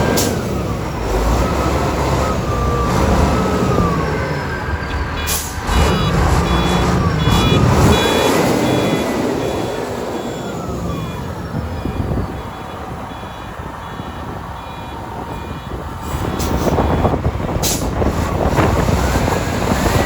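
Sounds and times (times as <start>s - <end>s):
heavy machinery engines running: 0.0s - 20.0s
reversing alarm beeping: 2.4s - 17.8s.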